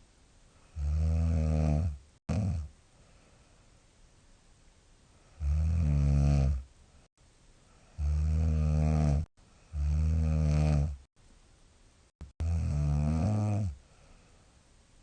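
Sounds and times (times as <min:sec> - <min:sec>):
woman snoring: 0:00.7 - 0:02.7, 0:05.4 - 0:06.7, 0:07.8 - 0:11.1, 0:12.4 - 0:13.8.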